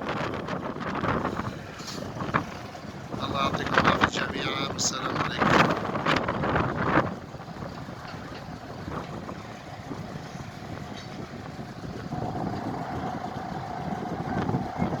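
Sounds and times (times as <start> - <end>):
vehicle engine running: 0.0 - 15.0
thin steady whine: 8.0 - 15.0.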